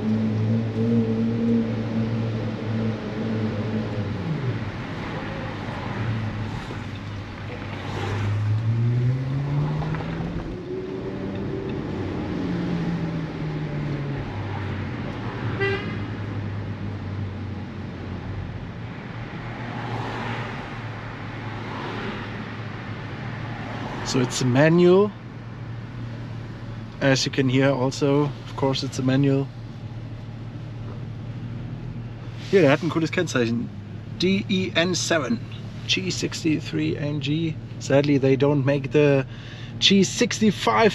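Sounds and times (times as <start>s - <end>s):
sports car engine accelerating: 0.0s - 24.6s
car horn toot: 15.5s - 16.1s.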